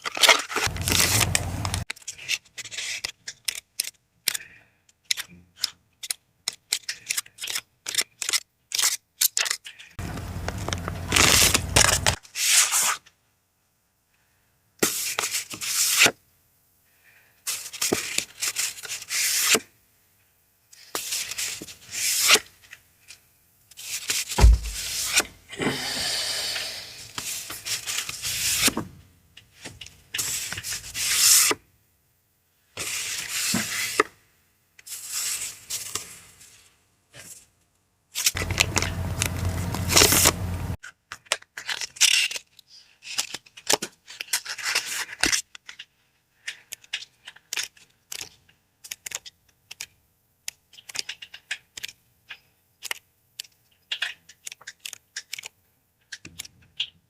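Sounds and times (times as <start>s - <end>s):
paper rustling and tearing: 0.0s - 3.6s, 6.7s - 13.0s, 38.2s - 40.5s, 41.6s - 45.8s.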